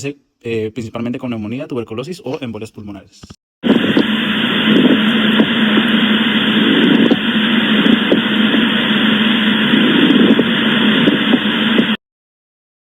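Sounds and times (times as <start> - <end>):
low hum: 3.6 - 12.0.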